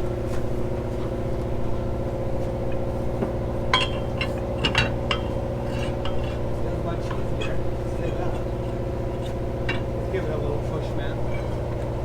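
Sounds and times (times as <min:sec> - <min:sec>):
metallic hardware clinks: 0:03.8 - 0:06.4.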